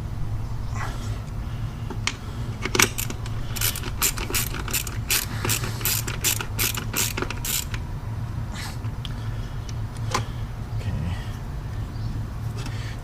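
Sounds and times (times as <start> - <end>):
steady low hum: 0.0 - 13.0
ratchet wrench clicking: 2.6 - 7.8.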